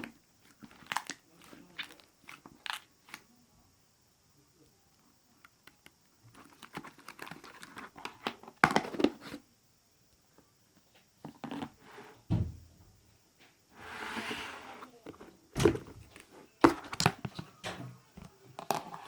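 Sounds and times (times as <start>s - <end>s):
crinkling handling noises: 0.0s - 3.2s, 6.2s - 9.4s
low thump: 12.3s - 12.9s.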